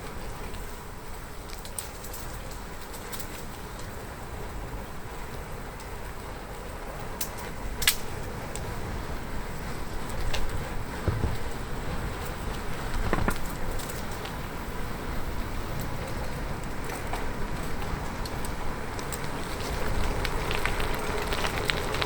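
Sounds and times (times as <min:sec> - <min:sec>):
bicycle tyres on road: 0:00.0 - 0:22.0
low bumps: 0:10.0 - 0:15.3, 0:19.2 - 0:22.0
sharp clicks and ticks: 0:16.1 - 0:22.0.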